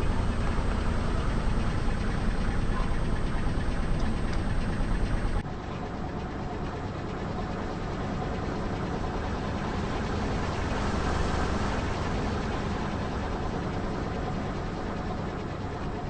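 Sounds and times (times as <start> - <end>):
car engine rumble: 0.0 - 5.4.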